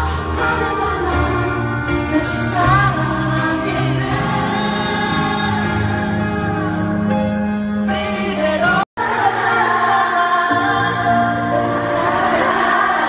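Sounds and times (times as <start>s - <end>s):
slow live ballad: 0.0s - 8.8s.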